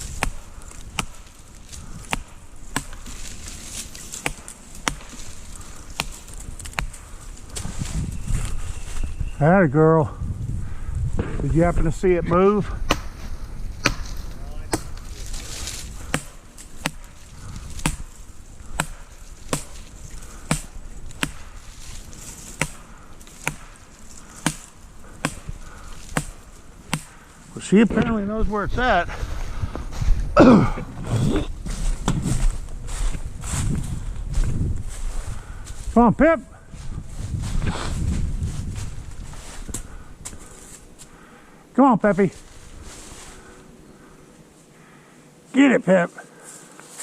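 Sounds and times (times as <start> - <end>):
stick striking tree trunk: 0.0 - 7.7, 12.8 - 27.3
low wind rumble: 0.0 - 41.7.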